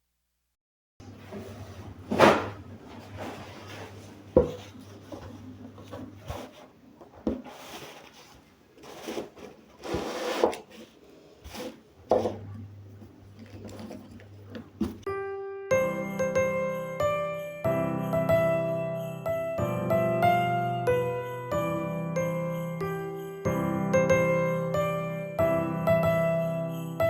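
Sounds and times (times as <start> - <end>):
rubbing and rustling: 1.0 - 15.1.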